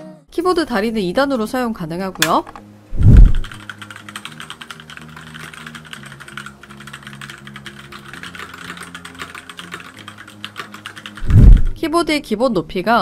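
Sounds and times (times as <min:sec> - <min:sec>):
fast typing on mechanical keyboard: 0:03.1 - 0:11.8.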